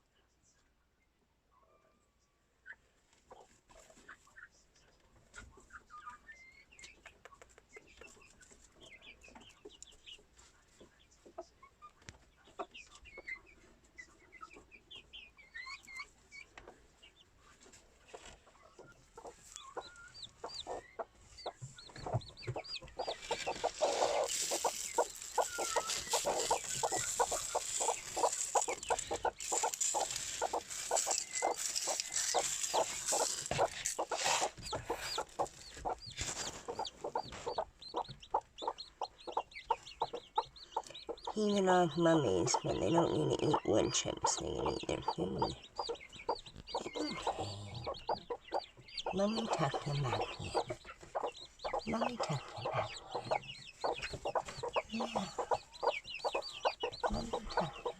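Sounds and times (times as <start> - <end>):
chicks peeping: 2.6 - 57.9
hens clucking: 17.5 - 57.9
rapid clicking and scratching: 23.3 - 35.6.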